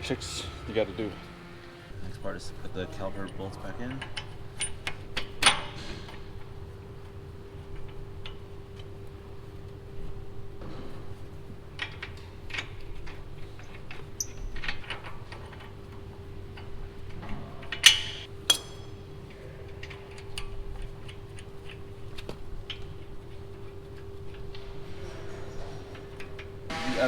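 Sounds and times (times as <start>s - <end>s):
tools and bolts clinking: 3.1s - 6.3s, 11.8s - 26.5s
ringing metallic clanks: 17.7s - 19.2s.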